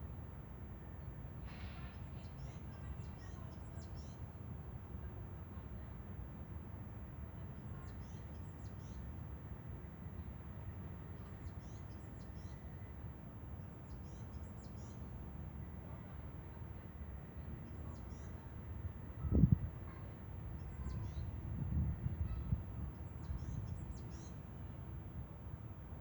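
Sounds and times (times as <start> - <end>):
songbird chirping: 13.6 - 15.1, 23.0 - 24.4.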